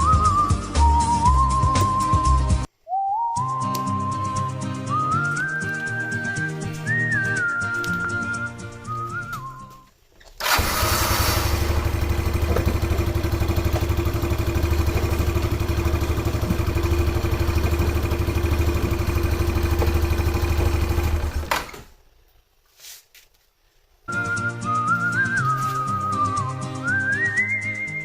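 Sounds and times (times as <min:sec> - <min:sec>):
scooter engine idling: 0:10.4 - 0:21.8.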